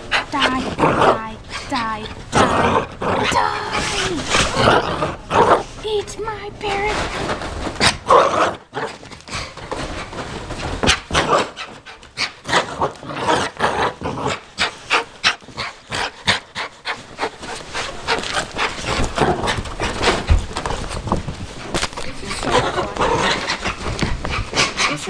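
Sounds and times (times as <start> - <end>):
dog panting: 0.0 - 8.0, 14.2 - 25.0.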